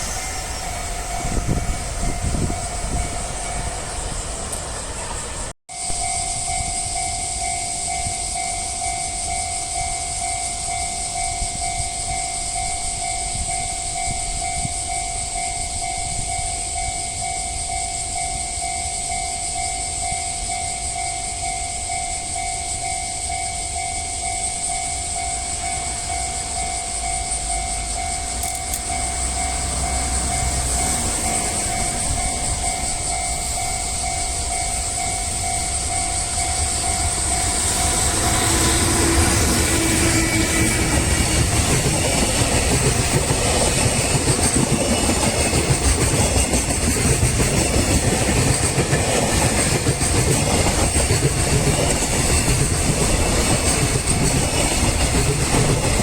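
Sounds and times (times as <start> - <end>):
freight train rumbling past: 0.0 - 56.0
level-crossing warning bell ringing: 0.0 - 56.0.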